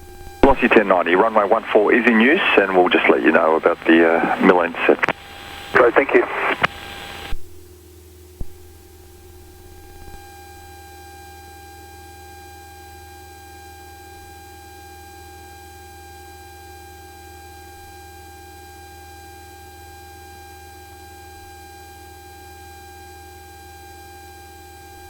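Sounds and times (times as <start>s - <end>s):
aircraft engine drone: 0.4s - 7.3s.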